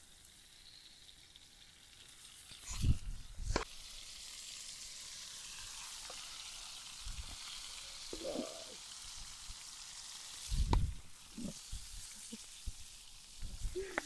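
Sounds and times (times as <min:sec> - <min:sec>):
food sizzling in a pan: 0:00.0 - 0:14.0.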